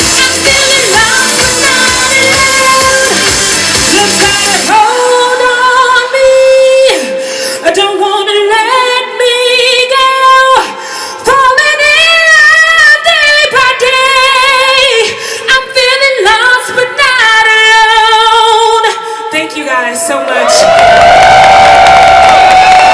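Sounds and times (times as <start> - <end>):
live band: 0.0 - 5.3
woman singing with vibrato: 0.0 - 20.8.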